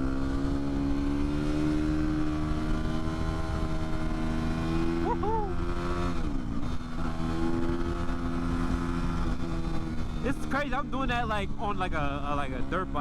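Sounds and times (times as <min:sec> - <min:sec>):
motorcycle engine running: 0:00.0 - 0:13.0
rider shouting: 0:04.9 - 0:05.7.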